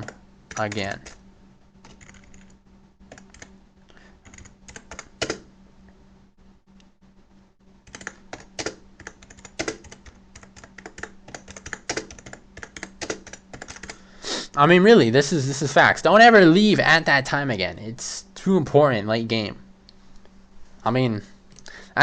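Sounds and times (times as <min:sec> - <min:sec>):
faint steady hum: 0:00.0 - 0:22.0
keyboard typing clicks: 0:01.8 - 0:02.5, 0:04.2 - 0:05.4, 0:07.9 - 0:14.0.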